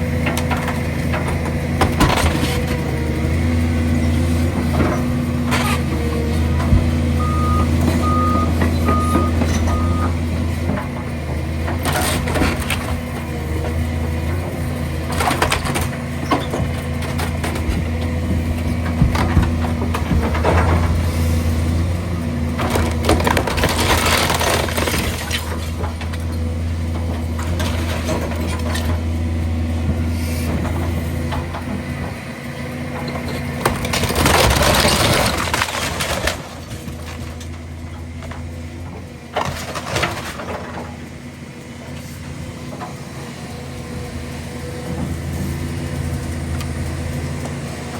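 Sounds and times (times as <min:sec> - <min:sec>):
heavy machine engine running: 0:00.0 - 0:47.9
house structure crunching and breaking: 0:22.7 - 0:26.2, 0:33.6 - 0:37.4.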